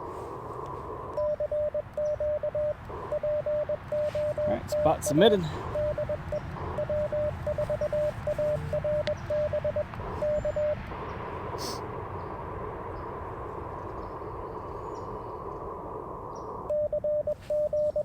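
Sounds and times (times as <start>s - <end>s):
radio receiver hiss: 0.0s - 18.0s
morse code beeps: 1.1s - 10.9s, 16.7s - 18.0s.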